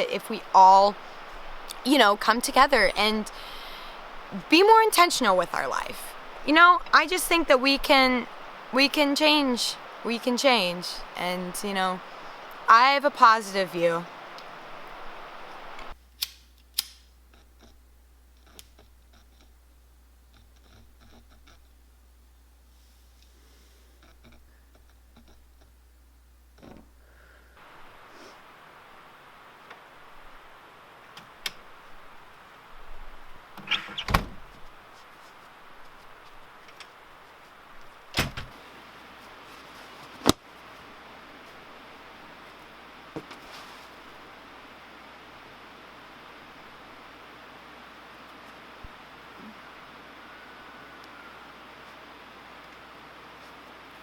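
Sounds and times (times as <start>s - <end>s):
sharp clicks: 15.8s - 17.7s.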